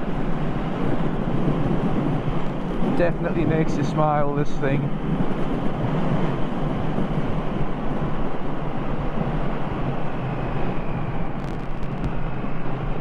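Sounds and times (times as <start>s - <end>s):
wind rush over microphone: 0.0s - 13.0s
motorcycle engine running: 11.4s - 12.5s.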